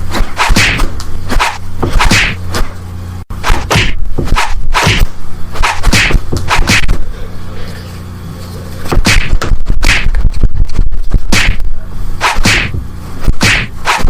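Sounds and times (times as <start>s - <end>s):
punch hits and swishes: 0.1s - 2.7s, 3.4s - 7.0s, 8.9s - 10.5s, 11.2s - 14.0s.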